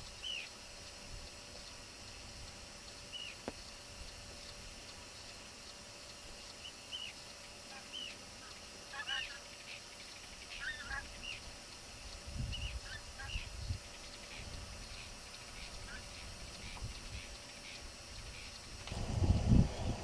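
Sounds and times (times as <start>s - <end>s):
geese honking: 8.9s - 9.4s, 10.5s - 11.4s, 12.9s - 13.5s
low rumbling noise: 17.9s - 20.0s.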